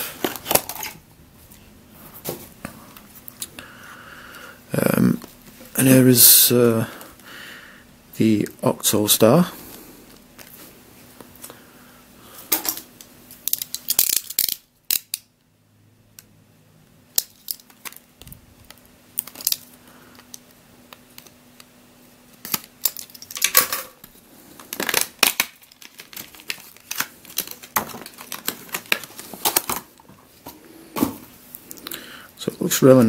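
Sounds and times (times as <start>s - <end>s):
packaging rustling: 0.1s - 1.0s, 17.2s - 21.4s, 22.3s - 30.4s.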